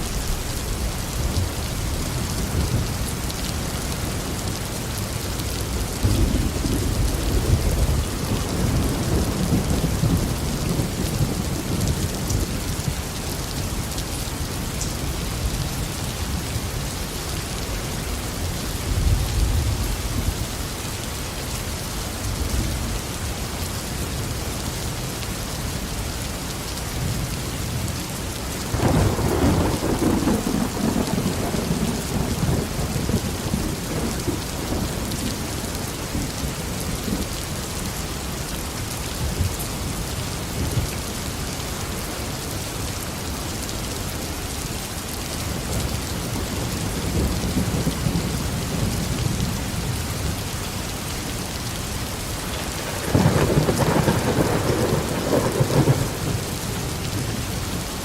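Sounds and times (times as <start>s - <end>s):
heavy rain falling: 0.0s - 58.0s
thunder: 6.0s - 12.5s, 28.8s - 35.3s, 52.8s - 56.4s.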